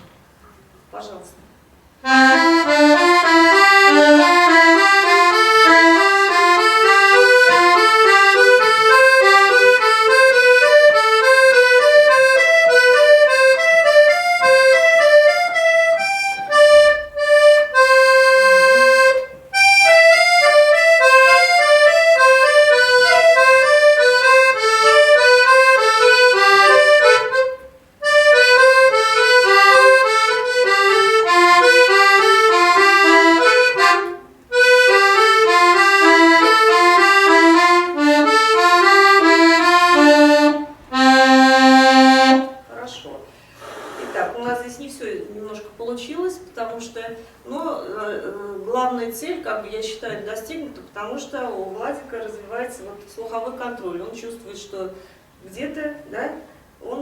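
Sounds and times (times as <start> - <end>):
accordion playing quick notes: 2.0 - 42.6.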